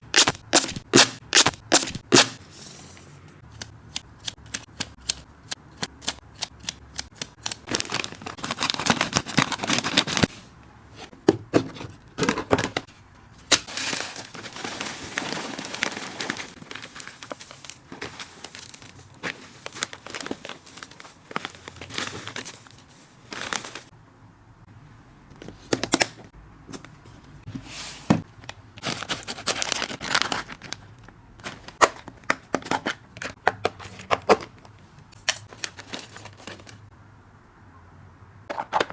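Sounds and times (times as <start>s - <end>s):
plastic crinkling: 7.3s - 10.3s, 13.6s - 23.9s, 28.8s - 32.0s
rustling: 13.6s - 23.9s.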